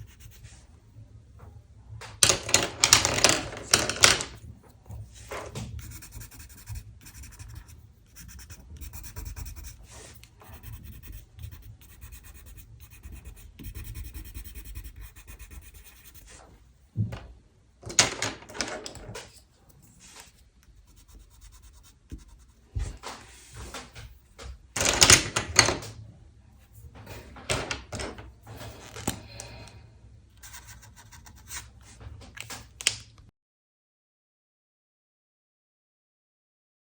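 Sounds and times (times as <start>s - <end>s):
pencil strokes on paper: 0.0s - 0.7s, 5.0s - 16.5s, 19.8s - 23.6s
low steady hum: 0.0s - 2.6s, 4.3s - 17.9s.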